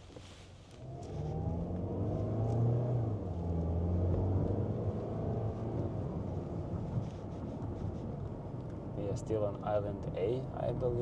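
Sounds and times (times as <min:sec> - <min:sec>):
car engine accelerating: 0:00.7 - 0:09.0.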